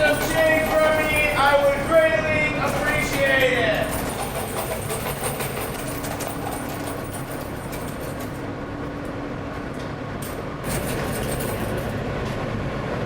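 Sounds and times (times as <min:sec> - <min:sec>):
subway train rumbling: 0:00.0 - 0:13.0.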